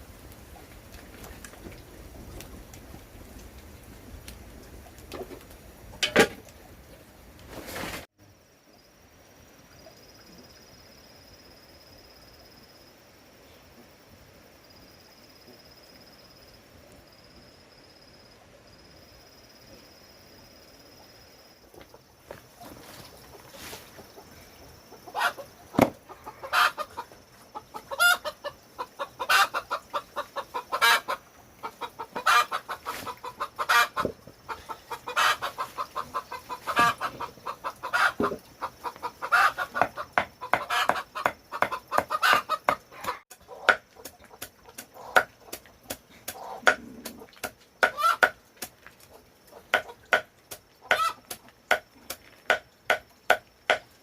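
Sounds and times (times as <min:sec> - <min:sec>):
chickens clucking and squawking: 0:21.8 - 0:48.4, 0:50.8 - 0:51.5.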